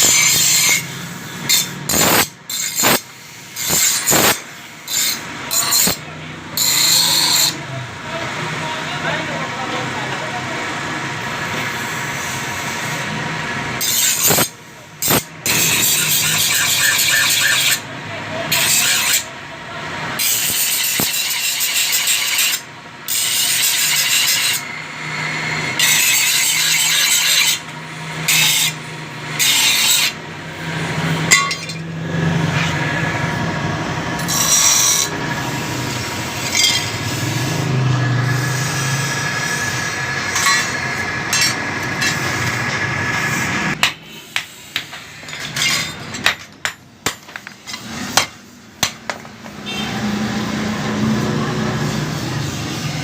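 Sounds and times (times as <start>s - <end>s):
steel rasping: 0.0s - 6.0s, 6.6s - 7.6s, 13.8s - 17.8s, 18.5s - 19.3s, 20.2s - 24.8s, 25.6s - 30.2s, 34.2s - 42.4s.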